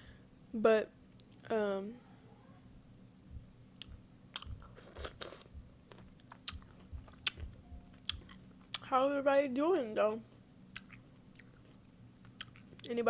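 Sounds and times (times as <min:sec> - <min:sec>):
mouth smacking: 0:03.8 - 0:08.9, 0:10.7 - 0:11.6
pickle crunching: 0:03.8 - 0:08.9, 0:10.7 - 0:13.0.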